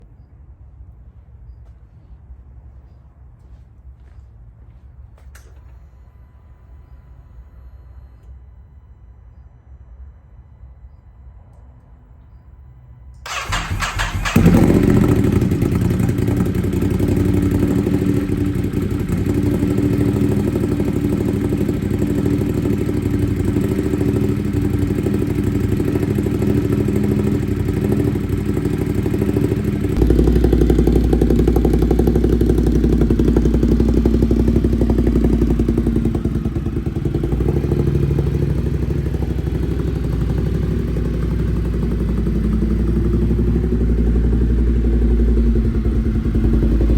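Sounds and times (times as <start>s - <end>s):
motorcycle engine starting and idling: 13.1s - 46.9s.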